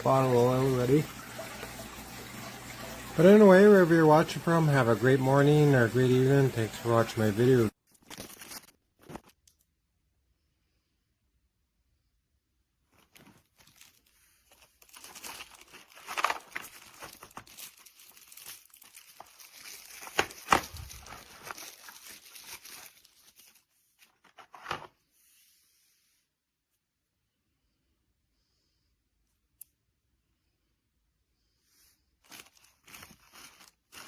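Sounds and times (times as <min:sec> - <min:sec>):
crinkling and rustling: 0:03.2 - 0:09.7, 0:12.8 - 0:25.1, 0:32.2 - 0:34.0.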